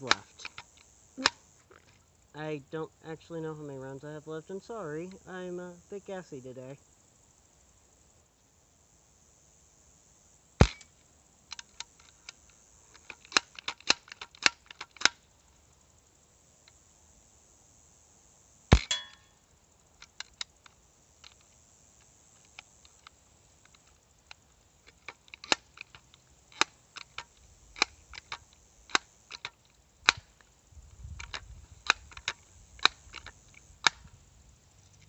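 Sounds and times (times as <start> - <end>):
quiet sharp clicks: 0.0 - 1.9, 31.2 - 34.2
air gun shot: 10.6 - 10.9.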